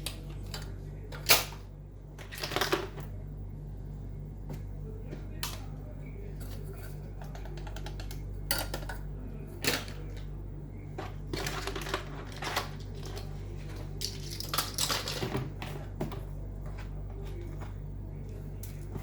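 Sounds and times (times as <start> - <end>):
steady low hum: 0.0 - 19.0
plastic toys clattering: 2.2 - 3.1, 6.4 - 10.3, 11.0 - 17.8.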